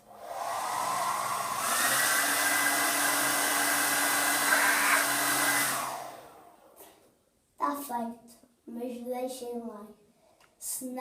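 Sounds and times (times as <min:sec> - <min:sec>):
hair dryer running: 0:00.0 - 0:06.7.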